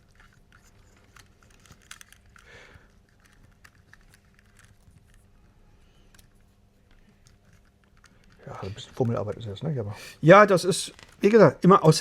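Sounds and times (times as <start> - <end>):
small metal and plastic clicks: 0.0 - 5.3.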